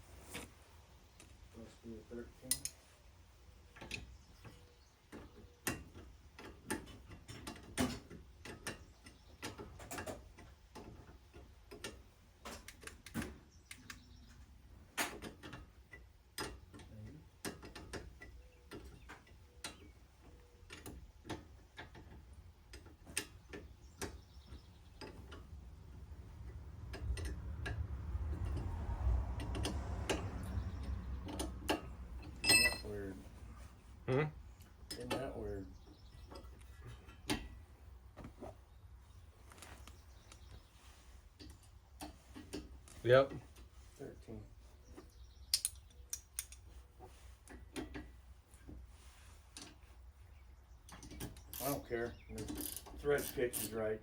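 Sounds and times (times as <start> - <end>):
metal hand tools clinking: 32.2 - 32.9.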